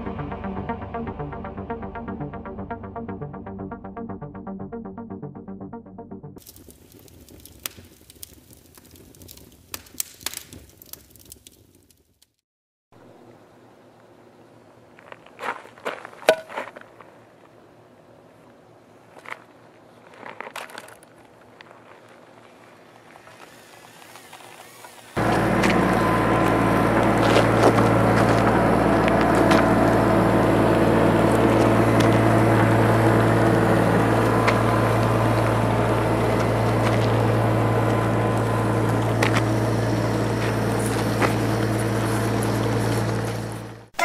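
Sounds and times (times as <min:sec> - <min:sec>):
vehicle engine humming: 0:00.0 - 0:06.5, 0:21.2 - 0:44.0.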